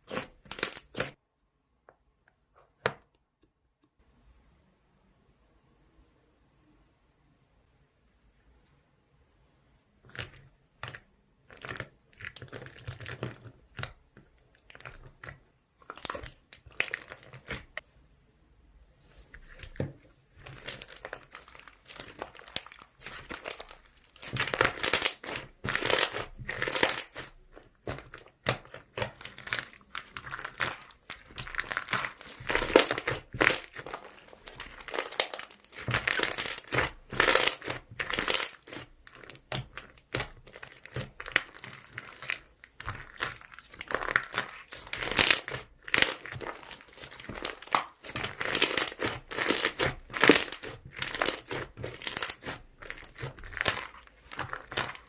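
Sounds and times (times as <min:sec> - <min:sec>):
slime crackling and popping: 0:00.0 - 0:01.2, 0:10.1 - 0:17.8, 0:20.4 - 0:55.0.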